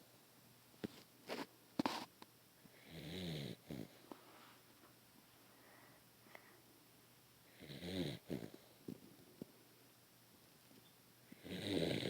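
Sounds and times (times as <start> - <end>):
dog snoring: 2.8 - 4.0, 7.5 - 8.7, 11.3 - 12.0.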